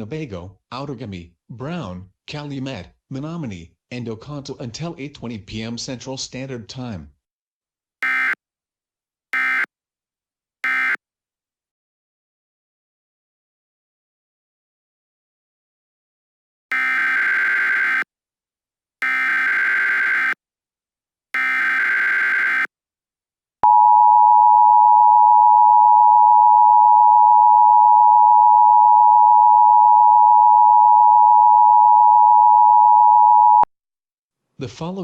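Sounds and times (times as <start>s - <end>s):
two-tone attention signal: 8.0s - 8.4s, 9.4s - 9.7s, 10.6s - 11.0s, 16.7s - 18.0s, 21.4s - 22.7s.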